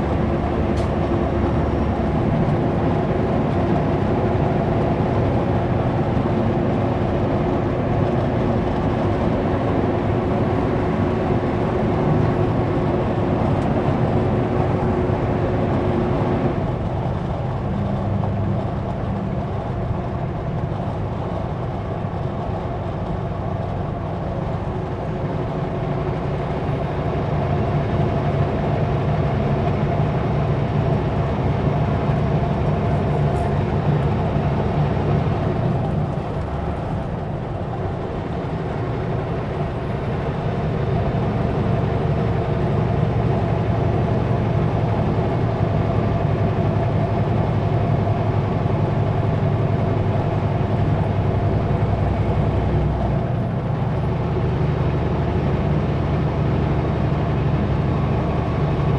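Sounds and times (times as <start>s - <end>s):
road noise: 0.0s - 58.9s
truck diesel engine: 0.0s - 58.9s.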